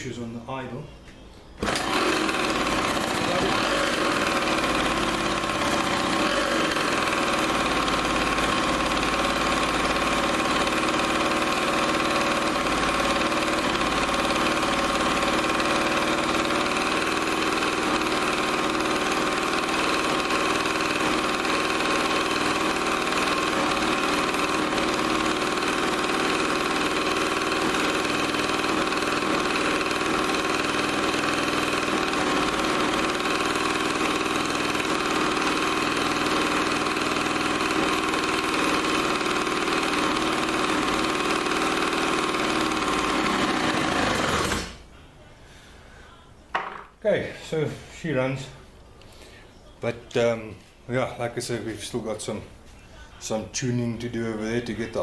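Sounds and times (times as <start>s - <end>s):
person talking: 0.0s - 1.0s, 3.1s - 3.9s, 49.8s - 55.0s
two-stroke engine idling: 1.6s - 44.8s.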